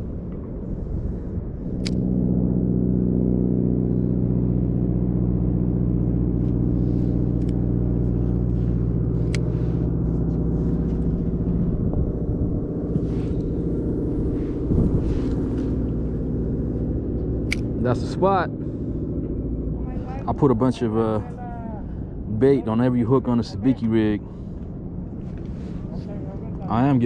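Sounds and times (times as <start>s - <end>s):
engine running: 0.0s - 27.0s
low hum: 0.0s - 27.0s
sharp clicks: 17.4s - 17.7s.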